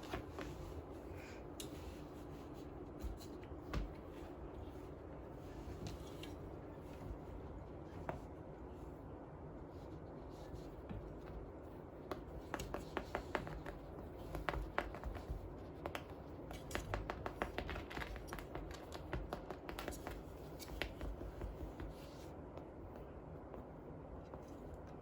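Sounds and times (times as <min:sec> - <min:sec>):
low steady hum: 0:00.0 - 0:25.0
light clicks and taps: 0:01.5 - 0:04.7.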